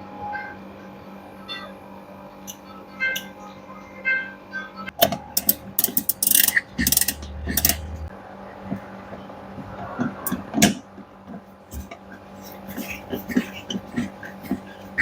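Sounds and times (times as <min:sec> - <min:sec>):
metal clicks and knocks: 0:05.0 - 0:07.9
short ratcheting rasp: 0:05.4 - 0:08.0.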